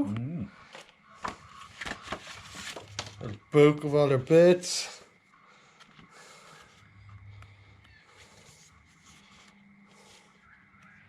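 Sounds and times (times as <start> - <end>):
paper pages rustling: 0.6 - 3.5, 8.1 - 10.4.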